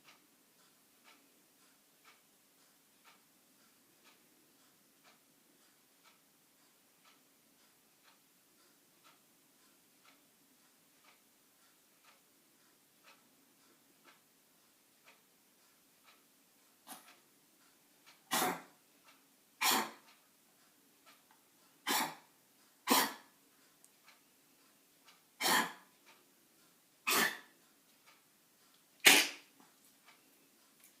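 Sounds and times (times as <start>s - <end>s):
pet animal coughing: 18.3s - 18.7s, 19.6s - 20.0s, 21.8s - 22.2s, 22.8s - 23.3s, 25.4s - 25.8s, 27.1s - 27.5s, 29.0s - 29.4s.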